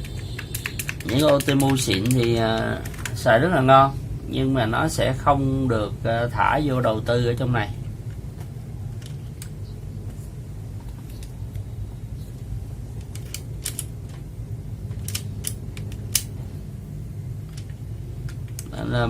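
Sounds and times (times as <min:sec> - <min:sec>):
mechanical keyboard clicks: 0:00.0 - 0:03.2
steady low hum: 0:00.0 - 0:19.0.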